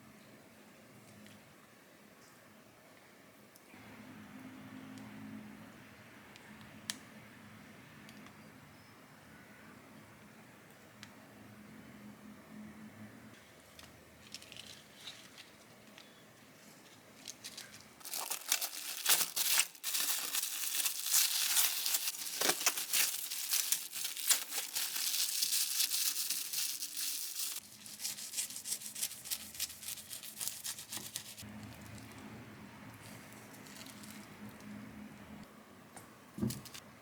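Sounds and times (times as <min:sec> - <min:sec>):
plastic crinkling and crumpling: 0:14.2 - 0:32.2.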